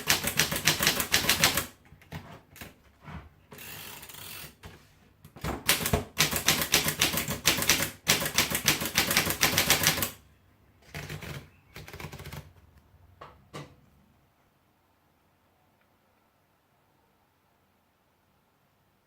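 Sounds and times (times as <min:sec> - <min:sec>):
manual typewriter typing: 0:00.0 - 0:02.7, 0:05.6 - 0:10.2, 0:10.8 - 0:12.6.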